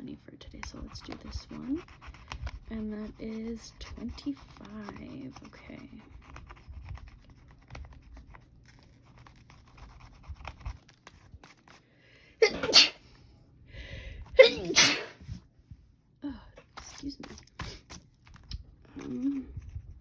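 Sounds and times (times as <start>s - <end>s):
person sneezing: 12.4s - 13.0s, 14.4s - 15.2s.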